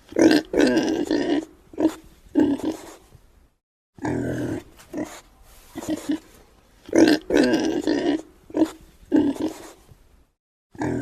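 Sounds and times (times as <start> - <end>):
pig grunting: 0.1 - 3.0, 4.0 - 6.3, 6.9 - 9.8, 10.7 - 11.0.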